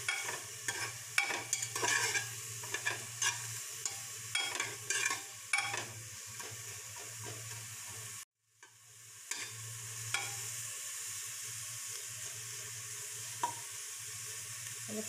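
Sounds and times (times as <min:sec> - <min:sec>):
spatula scraping a pan: 0:00.0 - 0:08.2, 0:09.3 - 0:10.5
onion sizzling in a pan: 0:00.0 - 0:15.0.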